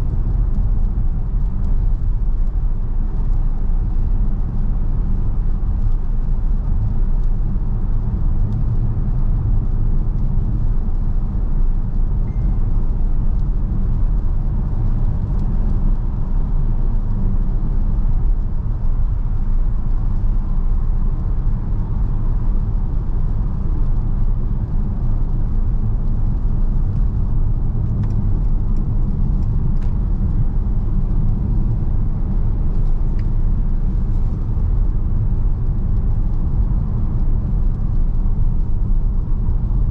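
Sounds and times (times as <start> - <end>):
road noise: 0.0 - 39.9
van driving low rumble: 0.0 - 39.9.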